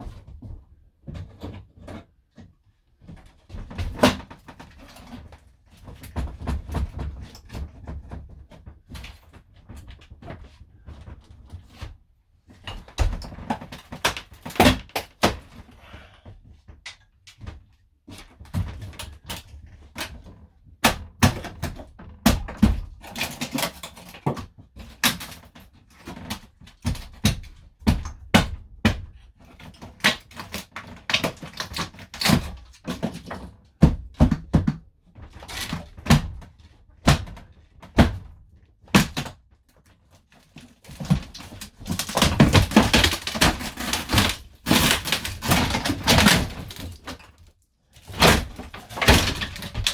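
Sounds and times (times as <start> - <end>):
knocks bangs and scrapes: 40.8 - 47.3, 48.0 - 49.9.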